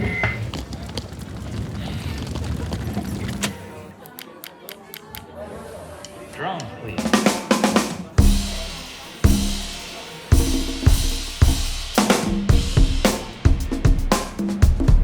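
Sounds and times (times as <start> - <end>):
drum kit playing: 7.0 - 15.0.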